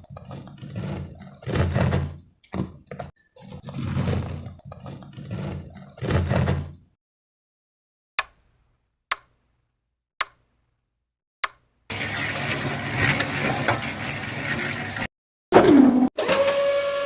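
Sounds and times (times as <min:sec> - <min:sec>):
sharp clicks: 0:08.2 - 0:08.4, 0:09.1 - 0:09.3, 0:10.2 - 0:10.4, 0:11.4 - 0:11.6.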